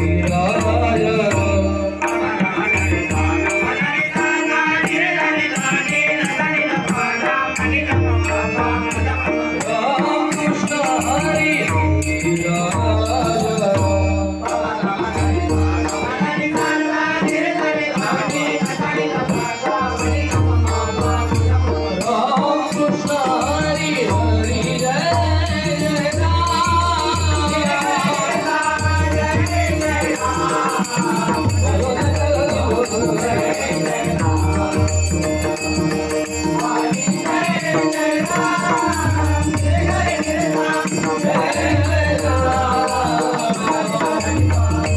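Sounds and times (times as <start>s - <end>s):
rattling jingling beat: 0.0s - 6.1s, 7.0s - 16.8s, 17.4s - 44.9s.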